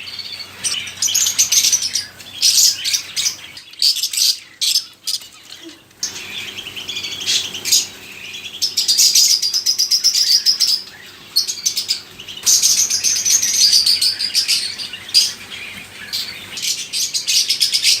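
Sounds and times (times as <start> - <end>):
caged birds chirping and chattering: 0.0 - 18.0.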